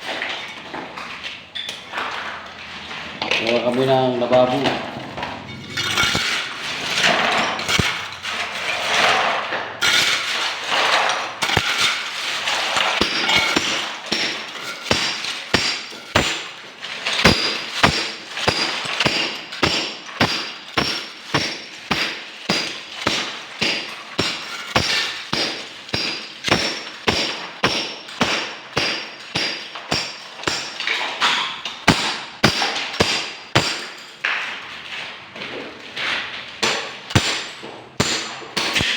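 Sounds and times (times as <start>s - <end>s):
irregular knocking and scraping: 0.0s - 28.2s.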